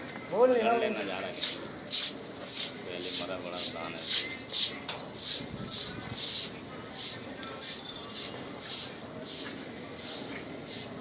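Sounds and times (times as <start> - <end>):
broom sweeping a hard floor: 1.3 - 4.2, 5.3 - 11.0.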